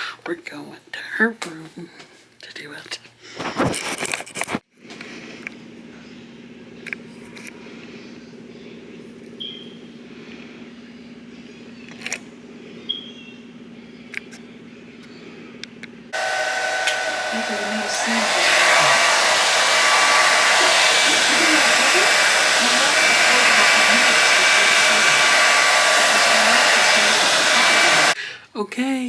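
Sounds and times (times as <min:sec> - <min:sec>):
hair dryer blowing: 0:16.2 - 0:28.2.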